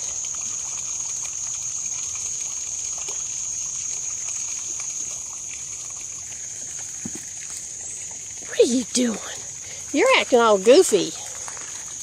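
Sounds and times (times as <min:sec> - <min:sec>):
water trickling: 0:00.0 - 0:12.0
faint ticks: 0:11.2 - 0:12.0.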